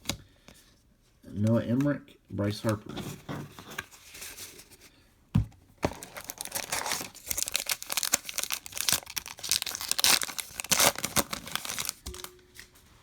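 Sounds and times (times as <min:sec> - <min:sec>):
foil wrapper tearing and crinkling: 0:05.9 - 0:12.0.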